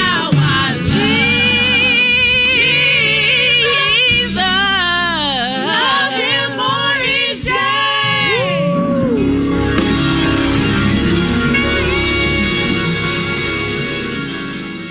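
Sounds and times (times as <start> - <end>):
solo voice singing: 0.0 - 9.2
low accompaniment chords: 8.8 - 14.9.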